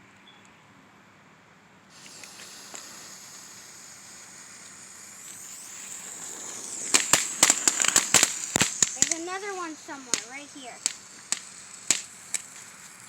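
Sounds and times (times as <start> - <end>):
firework fuse sizzling: 1.9 - 13.0
firecracker bangs: 4.7 - 13.0.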